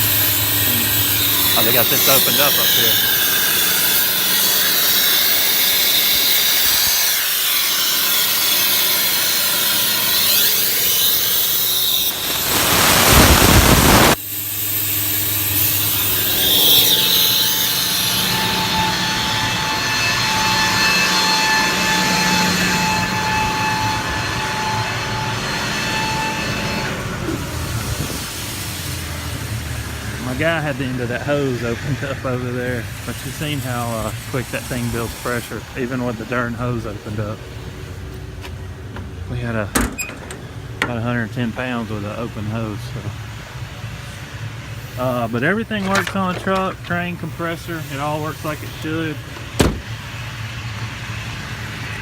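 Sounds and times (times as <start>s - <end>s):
air compressor running: 0.0s - 4.6s, 12.1s - 19.8s
air hissing from hose: 11.4s - 17.9s.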